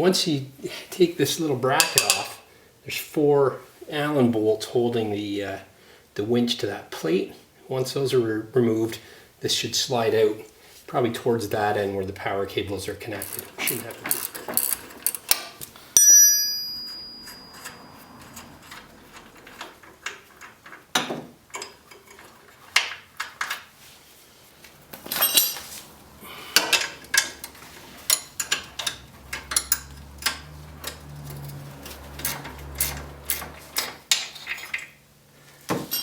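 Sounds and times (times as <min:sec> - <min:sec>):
wrench clicking on metal: 0:26.6 - 0:34.0.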